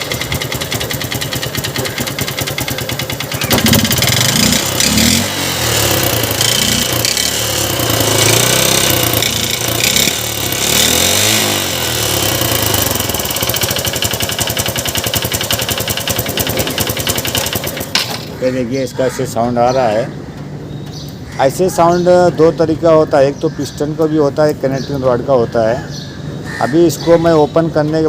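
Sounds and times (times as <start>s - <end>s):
motorcycle engine knocking and revving: 0.0s - 18.3s.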